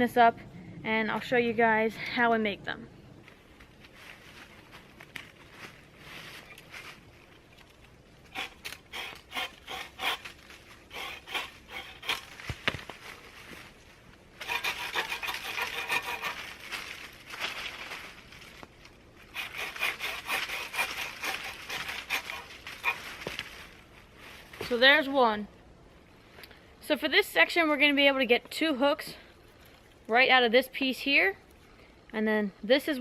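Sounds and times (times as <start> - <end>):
hand saw cutting branch: 8.3 - 12.9, 14.4 - 16.8, 19.2 - 23.5.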